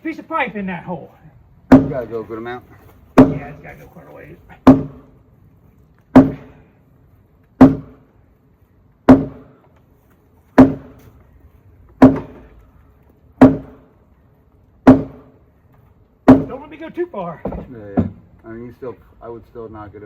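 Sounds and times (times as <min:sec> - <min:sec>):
heavy blows on log post: 0:01.7 - 0:02.3, 0:03.0 - 0:03.8, 0:04.5 - 0:05.2, 0:06.1 - 0:06.7, 0:07.5 - 0:08.1, 0:09.0 - 0:09.8, 0:10.5 - 0:11.2, 0:11.9 - 0:12.6, 0:13.4 - 0:14.0, 0:14.8 - 0:15.4, 0:16.2 - 0:18.5.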